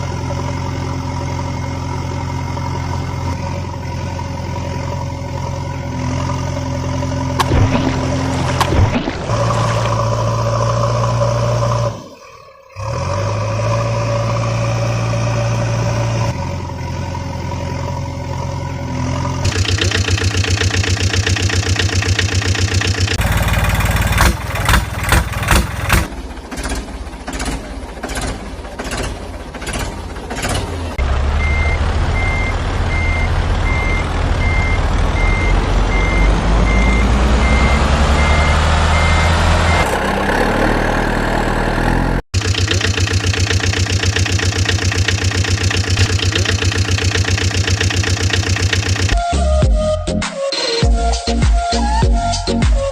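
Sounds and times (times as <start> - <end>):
heavy vehicle engine: 0.0 - 49.5
reversing beeper: 31.4 - 39.9.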